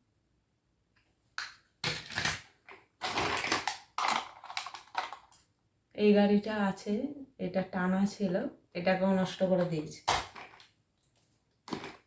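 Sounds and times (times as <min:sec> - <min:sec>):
toys rustling and clattering: 0:01.8 - 0:05.5, 0:09.6 - 0:12.0.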